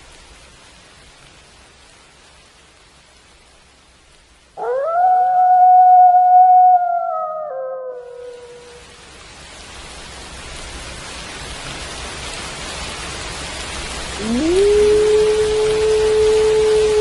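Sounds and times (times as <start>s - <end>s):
steady rain hiss: 0.0s - 17.0s
wolf howling: 4.6s - 8.8s, 14.2s - 17.0s.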